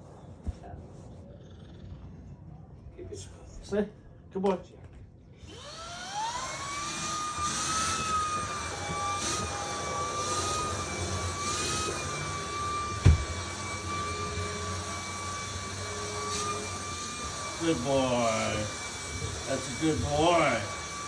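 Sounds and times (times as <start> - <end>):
vacuum cleaner running: 5.4 - 21.0
short thump: 13.0 - 13.3.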